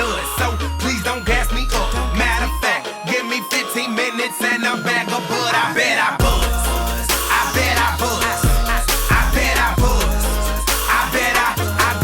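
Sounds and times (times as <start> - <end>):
deep bass: 0.0 - 2.6, 6.2 - 12.0
person singing: 0.0 - 12.0.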